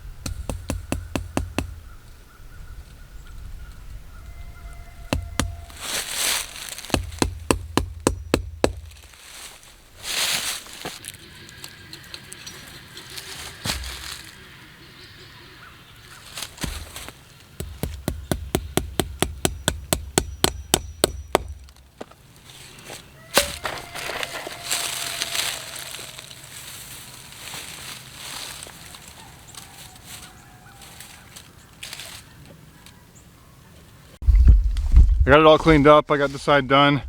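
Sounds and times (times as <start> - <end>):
knocks: 0.2 - 1.8, 5.1 - 5.8, 6.8 - 8.9.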